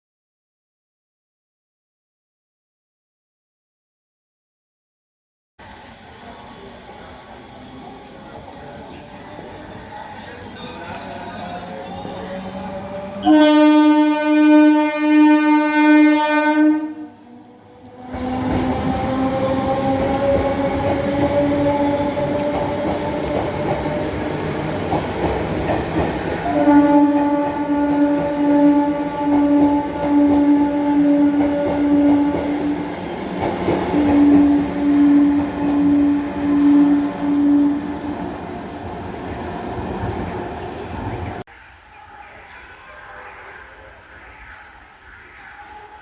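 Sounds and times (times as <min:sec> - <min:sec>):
train running noise: 0:05.6 - 0:46.0
electric train horn blasts: 0:13.2 - 0:17.2, 0:26.4 - 0:32.6, 0:34.1 - 0:38.0.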